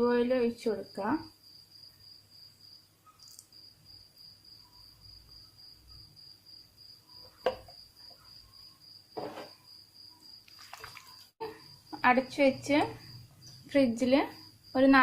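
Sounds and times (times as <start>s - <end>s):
cricket chirping: 0.8s - 15.0s.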